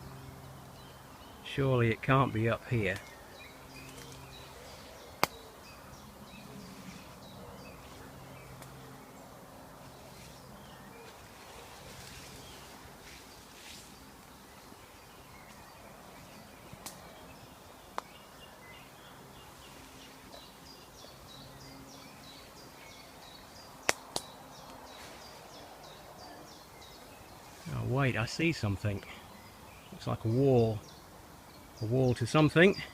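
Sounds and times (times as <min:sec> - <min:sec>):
woodland birdsong: 0:00.0 - 0:32.9
twigs snapping underfoot: 0:03.8 - 0:04.4, 0:05.1 - 0:05.5, 0:08.5 - 0:08.8, 0:16.7 - 0:17.2, 0:17.9 - 0:18.2, 0:23.8 - 0:25.2.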